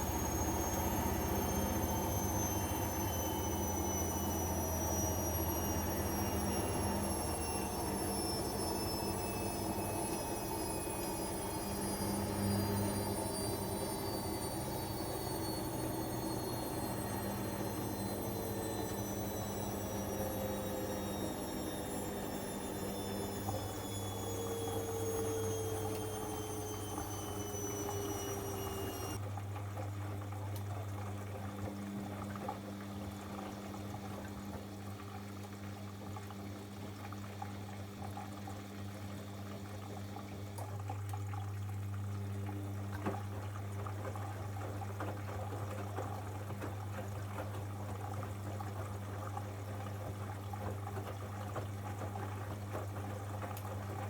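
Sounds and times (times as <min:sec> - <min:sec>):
falling motor whine: 0:00.0 - 0:29.2
steady hum: 0:00.0 - 0:29.2
water splashing in washing machine: 0:00.0 - 0:54.0.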